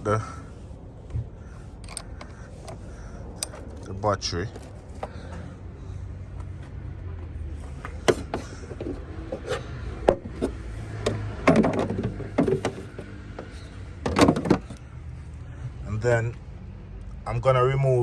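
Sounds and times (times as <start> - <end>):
tools clattering and rubbing: 7.5 - 14.8.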